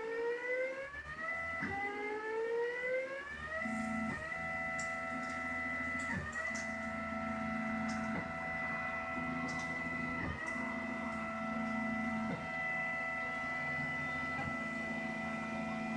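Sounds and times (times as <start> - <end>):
stepper motors whining: 3.5 - 15.9.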